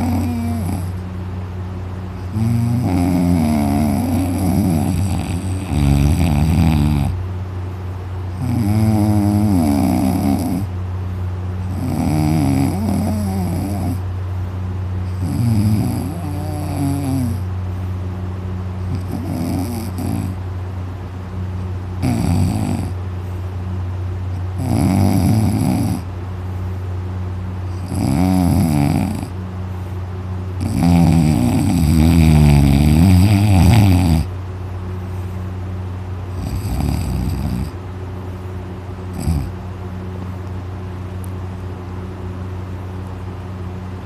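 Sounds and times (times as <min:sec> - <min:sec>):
man snoring heavily: 0:00.0 - 0:01.0, 0:02.2 - 0:07.2, 0:08.3 - 0:10.7, 0:11.6 - 0:14.0, 0:15.0 - 0:17.5, 0:18.8 - 0:20.4, 0:22.0 - 0:23.0, 0:24.3 - 0:26.1, 0:27.7 - 0:29.4, 0:30.6 - 0:34.3, 0:36.3 - 0:37.8, 0:39.1 - 0:39.6.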